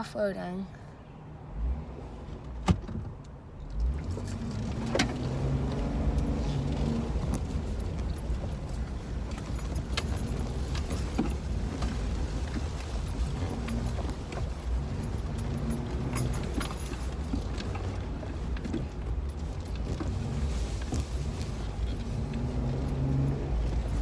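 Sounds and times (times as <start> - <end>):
engine and tyre rumble: 0.2 - 24.0
loose things rattling: 6.6 - 24.0.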